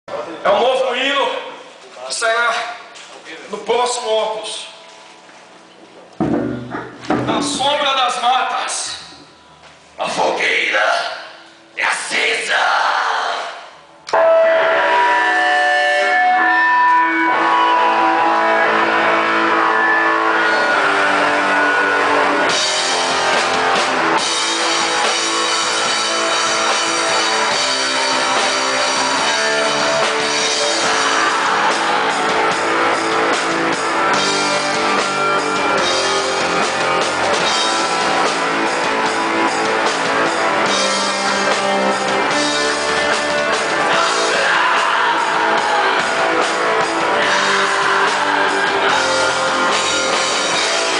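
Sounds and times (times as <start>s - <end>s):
electric guitar: 4.8s - 7.5s, 14.0s - 50.9s
black metal band playing: 6.2s - 8.2s, 14.1s - 50.9s.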